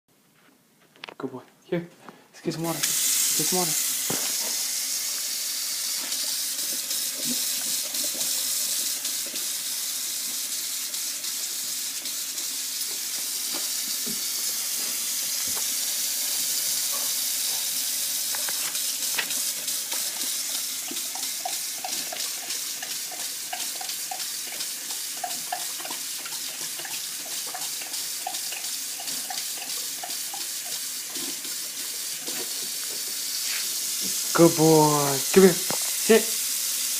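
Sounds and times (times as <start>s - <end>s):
faucet running into sink: 2.8s - 36.9s
puppy lapping water: 15.4s - 32.5s.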